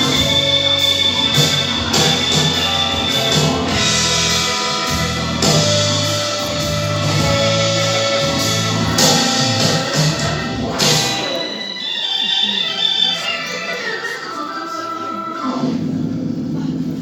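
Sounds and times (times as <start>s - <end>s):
bass notes: 0.0s - 11.6s
sustained instrument tones: 0.0s - 16.9s.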